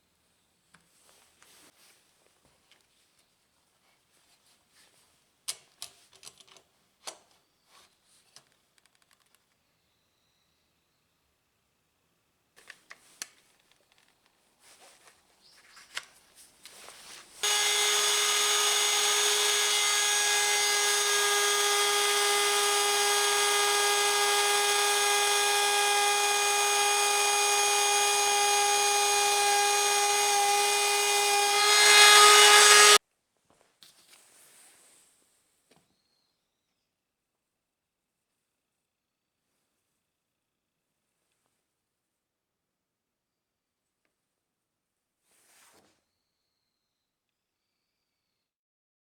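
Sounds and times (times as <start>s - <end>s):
trim router running: 17.4s - 33.0s.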